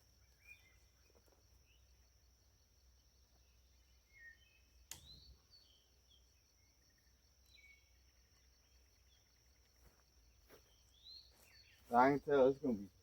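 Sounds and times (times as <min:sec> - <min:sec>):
faint bird chirps: 0:00.0 - 0:13.0
sharp click: 0:04.9 - 0:05.2.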